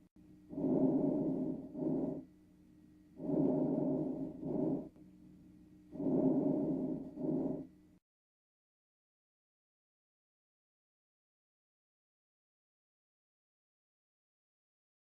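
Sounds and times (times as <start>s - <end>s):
faint steady hum: 0.0s - 8.0s
chest breath sounds: 0.5s - 2.2s, 3.2s - 4.9s, 5.9s - 7.7s.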